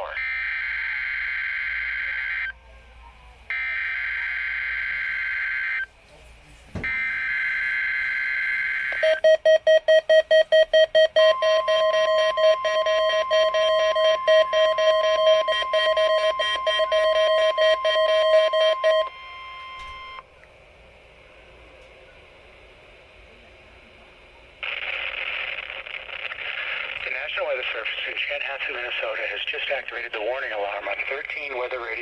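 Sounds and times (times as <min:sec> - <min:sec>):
steady warning alarm tone: 0:00.0 - 0:02.5, 0:03.5 - 0:05.9, 0:06.8 - 0:20.3
faint radio hiss: 0:00.0 - 0:09.0, 0:16.1 - 0:32.0
weather radio alert beeping: 0:06.8 - 0:20.2.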